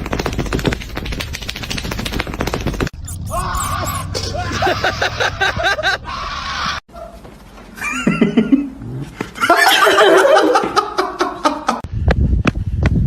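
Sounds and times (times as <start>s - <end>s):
cat calling: 3.0s - 5.1s
person laughing: 3.2s - 6.1s, 7.8s - 8.8s.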